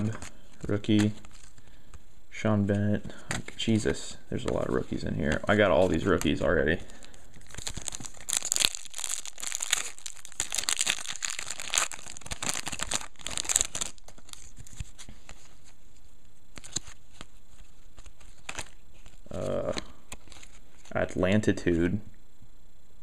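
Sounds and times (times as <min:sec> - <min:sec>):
wrappers tearing and crinkling: 0:06.9 - 0:15.0.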